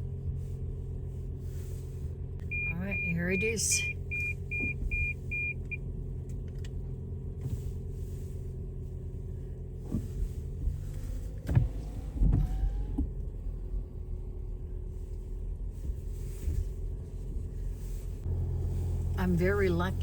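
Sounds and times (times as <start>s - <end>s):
car cabin rumble: 0.0s - 20.0s
electronic warning chime beeping: 2.5s - 5.7s.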